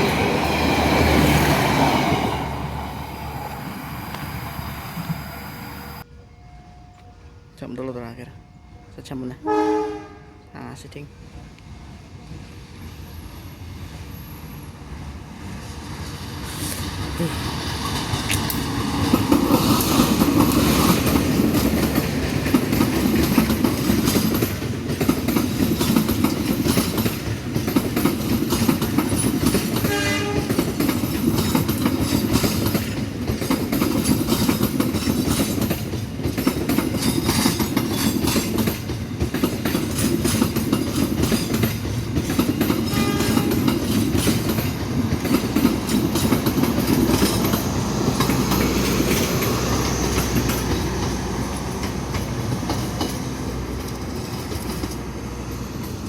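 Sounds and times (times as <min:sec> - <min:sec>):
train horn blast: 0:09.4 - 0:10.5, 0:29.8 - 0:30.7, 0:42.8 - 0:43.7
train wheels clattering: 0:16.5 - 0:56.0.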